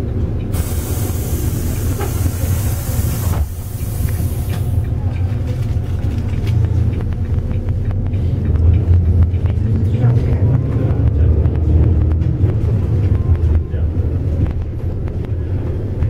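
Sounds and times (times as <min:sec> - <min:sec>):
bus engine rumbling: 0:00.0 - 0:16.0
compressed air hissing: 0:00.5 - 0:04.8.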